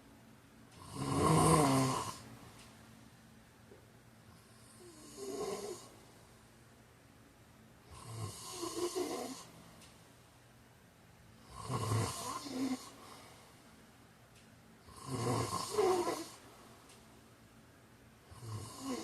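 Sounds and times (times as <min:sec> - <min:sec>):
man snoring: 0:00.8 - 0:02.3, 0:04.6 - 0:05.9, 0:07.9 - 0:09.5, 0:11.4 - 0:13.0, 0:14.9 - 0:16.4, 0:18.3 - 0:19.0.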